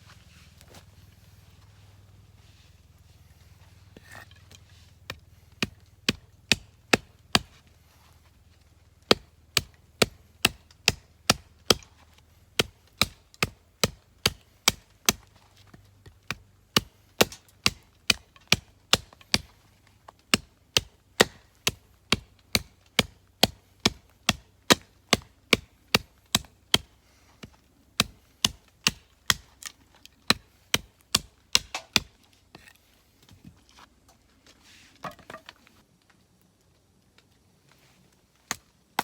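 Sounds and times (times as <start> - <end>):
knife chopping: 5.1 - 7.6, 20.3 - 26.9.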